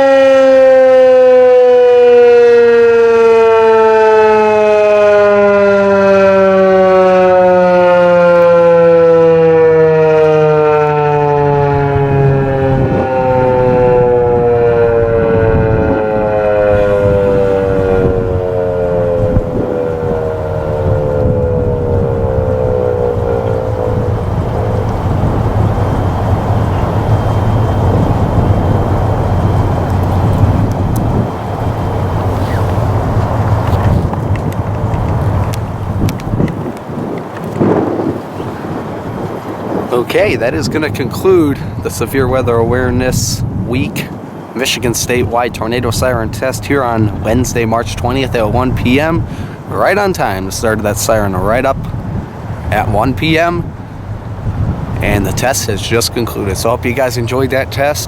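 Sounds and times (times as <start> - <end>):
warning siren winding down: 0.0 - 58.0
loud low rumble: 11.2 - 36.6.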